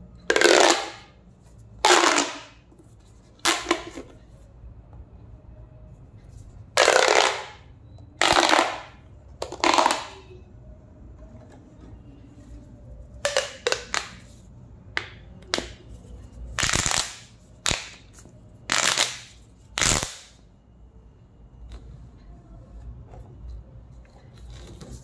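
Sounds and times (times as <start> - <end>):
pop tube toy popping: 0.3 - 1.1, 1.8 - 2.6, 6.8 - 7.6, 8.2 - 10.3, 13.2 - 14.2, 16.6 - 18.0, 18.7 - 20.4.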